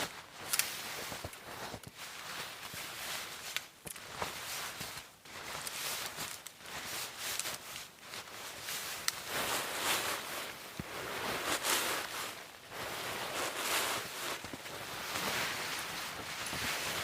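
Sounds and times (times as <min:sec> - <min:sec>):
footsteps in snow: 0:00.0 - 0:17.0.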